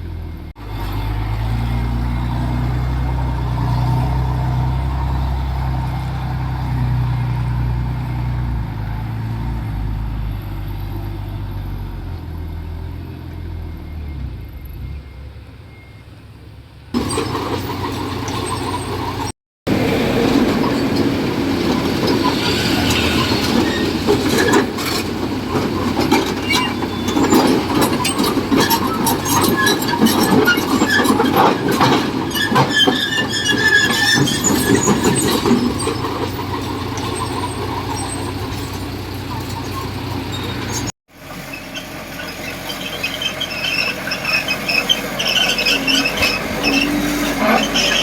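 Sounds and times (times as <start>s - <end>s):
diesel engine running: 0.0s - 48.0s
steel tracks clanking: 17.0s - 48.0s
track squeals: 17.0s - 48.0s.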